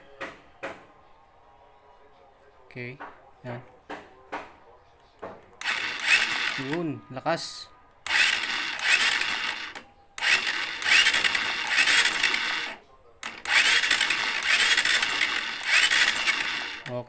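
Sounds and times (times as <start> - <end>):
motorcycle engine cranking: 5.6 - 7.0, 8.0 - 17.0.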